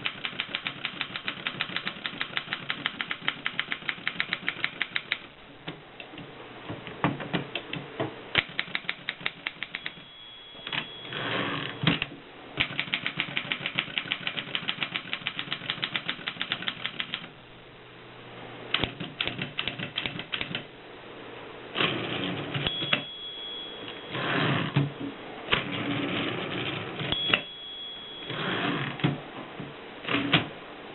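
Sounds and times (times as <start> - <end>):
typewriter key strikes: 0.0 - 5.2, 8.4 - 10.0, 12.0 - 17.2
typewriter margin bell: 8.8 - 12.0, 22.6 - 24.8, 26.1 - 29.0.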